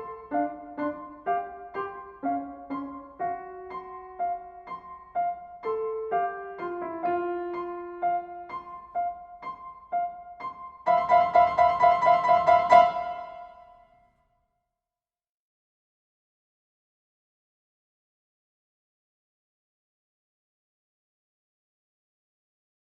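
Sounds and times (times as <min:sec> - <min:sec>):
rapid repeated piano chord: 0:00.0 - 0:13.9
solo piano: 0:00.0 - 0:14.0.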